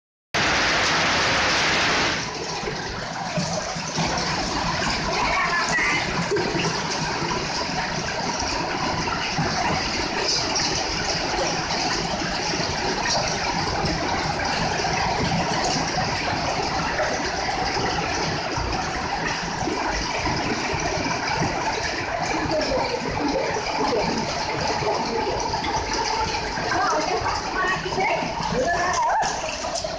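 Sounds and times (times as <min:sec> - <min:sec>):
steady rain falling: 0:00.4 - 0:29.9.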